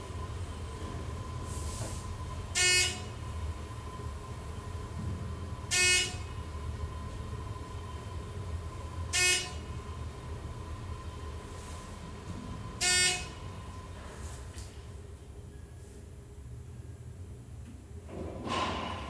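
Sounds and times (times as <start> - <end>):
alarm buzzer beeps: 2.5 - 3.2, 5.7 - 6.4, 9.1 - 9.7, 12.8 - 13.5.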